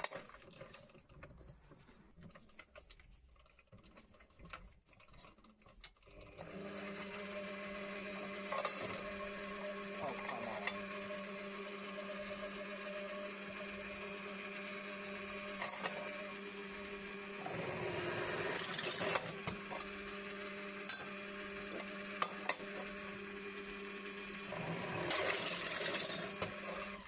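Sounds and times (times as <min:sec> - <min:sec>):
electric drill boring metal: 0:06.4 - 0:27.0.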